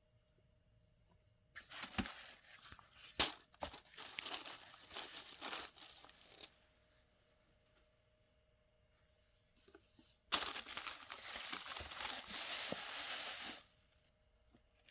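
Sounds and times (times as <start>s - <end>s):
packaging crinkling and rustling: 1.6s - 6.6s, 10.3s - 14.1s.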